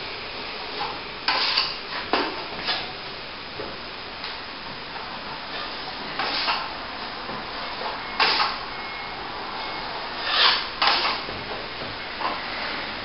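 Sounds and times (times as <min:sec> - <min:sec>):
trowel scraping wet plaster: 0:06.2 - 0:06.6, 0:10.2 - 0:11.2.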